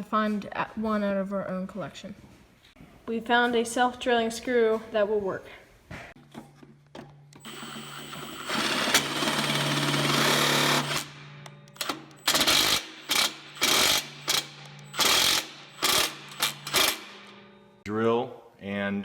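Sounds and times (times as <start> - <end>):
power drill driving screw: 7.4 - 17.2.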